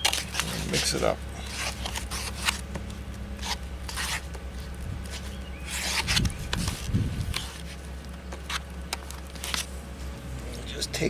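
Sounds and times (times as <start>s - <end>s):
mixing tool scraping filler: 0.0s - 2.6s
steady low hum: 0.0s - 11.0s.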